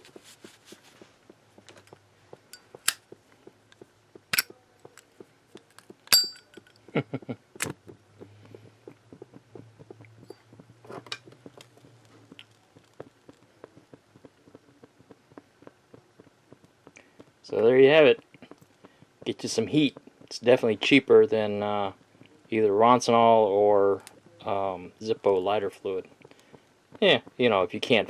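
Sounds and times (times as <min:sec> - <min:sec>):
metallic clinks and knocks: 0:05.7 - 0:06.8.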